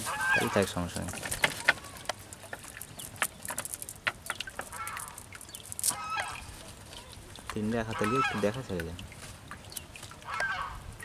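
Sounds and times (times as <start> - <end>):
honking bird calls: 0.0 - 2.6, 4.6 - 8.8, 9.6 - 11.0
farm birds calling: 0.0 - 11.0.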